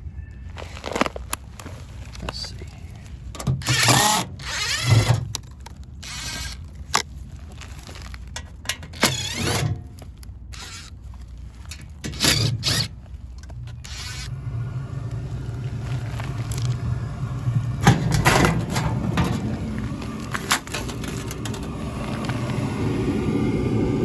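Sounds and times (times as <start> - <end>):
steady low hum: 0.0 - 24.0
power drill whirring: 3.6 - 5.3, 6.0 - 6.7, 10.5 - 11.0, 12.1 - 13.0, 13.7 - 17.6.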